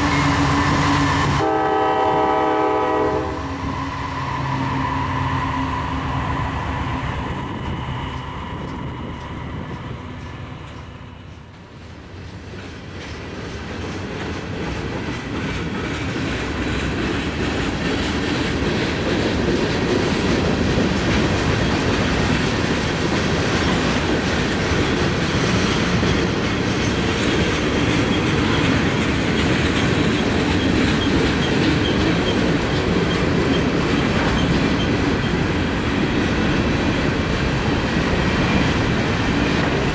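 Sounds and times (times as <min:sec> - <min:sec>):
train horn: 0:00.0 - 0:07.1
train wheels rumbling: 0:00.0 - 0:39.9
wheels clicking over rail joints: 0:07.5 - 0:39.9.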